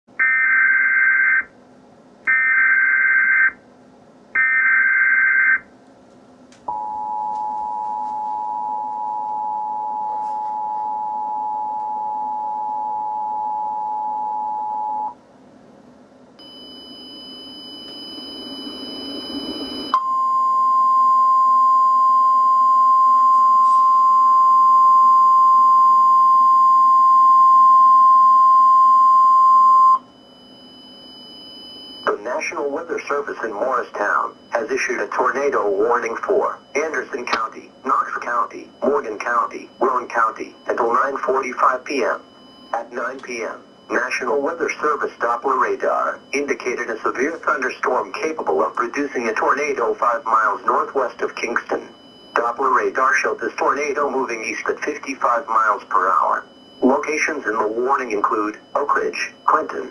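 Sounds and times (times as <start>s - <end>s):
two-tone attention signal: 6.7s - 15.2s, 16.4s - 32.2s.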